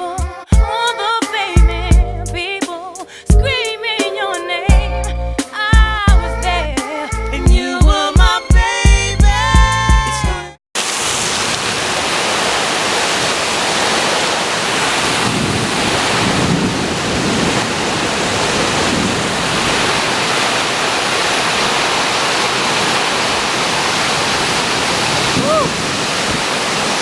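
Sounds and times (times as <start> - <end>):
heavy rain: 10.8 - 27.0
hurricane wind rushing: 10.8 - 27.0
wind buffeting microphone: 14.6 - 21.4, 22.6 - 27.0.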